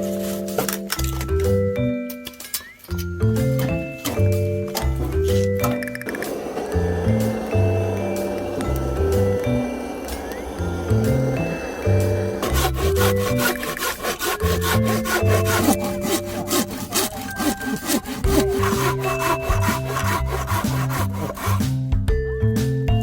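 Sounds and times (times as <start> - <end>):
rough rasping scraping: 6.2 - 21.8
background music with bass line: 18.1 - 23.0.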